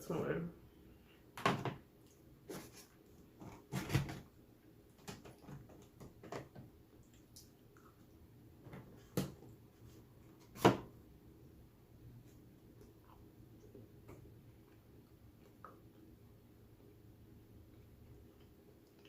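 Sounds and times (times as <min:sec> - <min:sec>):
food handling clicks and knocks: 0:03.4 - 0:04.3, 0:05.0 - 0:06.7.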